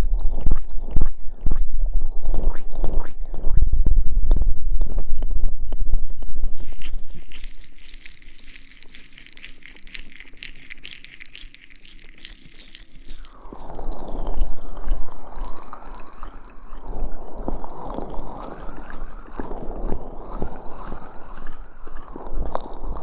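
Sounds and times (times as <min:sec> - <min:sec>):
sticky crackles: 0:06.0 - 0:23.0
gel rubbing on microphone: 0:06.1 - 0:23.0.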